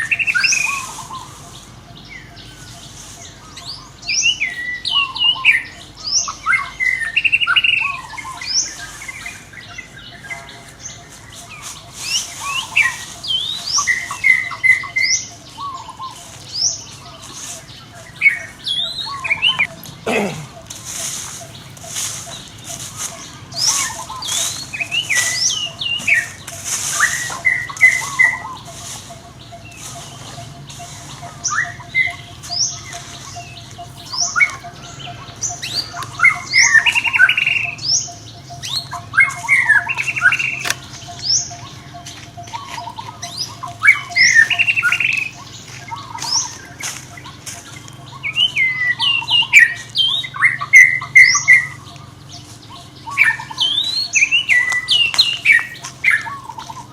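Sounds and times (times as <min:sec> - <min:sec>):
baby monkey squeaking: 0:20.5 - 0:47.4.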